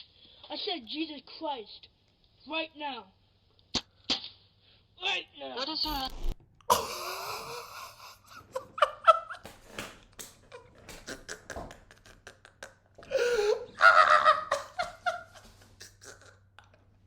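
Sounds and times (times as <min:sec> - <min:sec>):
man laughing hard: 0:06.7 - 0:09.5, 0:10.6 - 0:16.3.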